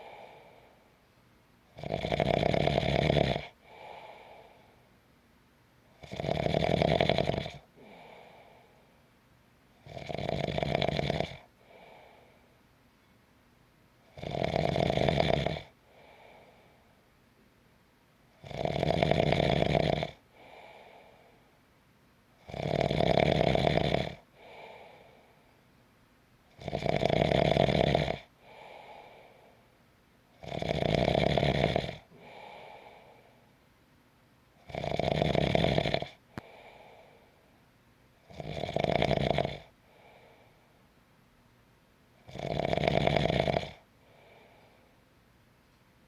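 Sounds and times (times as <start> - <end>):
person snoring: 1.8 - 4.6, 6.0 - 8.5, 9.8 - 12.2, 14.2 - 16.5, 18.4 - 21.0, 22.5 - 25.1, 26.6 - 29.2, 30.4 - 33.1, 34.7 - 37.1, 38.3 - 40.2, 42.3 - 44.6.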